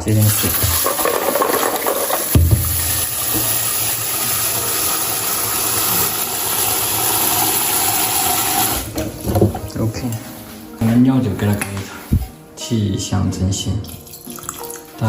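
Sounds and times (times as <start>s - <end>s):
tap water running into a pot: 0.2s - 8.9s, 14.0s - 14.9s.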